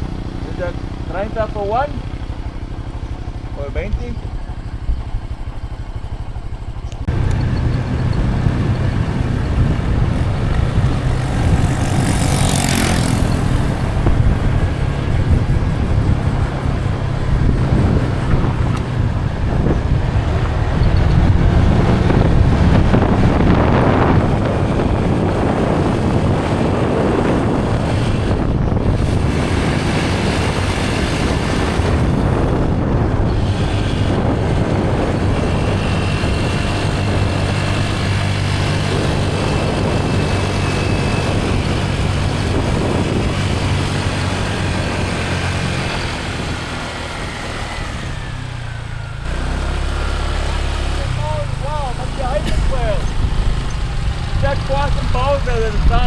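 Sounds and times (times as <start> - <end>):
road and wind noise: 0.0 - 56.0
vehicle engine rumble: 0.0 - 56.0.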